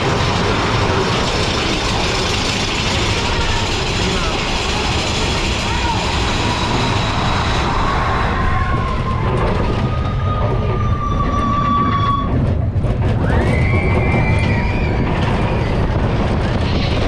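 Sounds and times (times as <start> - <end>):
roller coaster rumbling on track: 0.0 - 17.0
high wheel squeals: 10.4 - 12.4.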